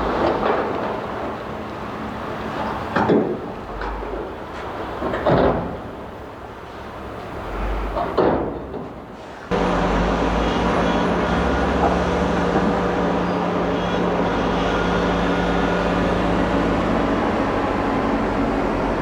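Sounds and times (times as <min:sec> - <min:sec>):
heavy diesel engine running: 0:09.5 - 0:19.0.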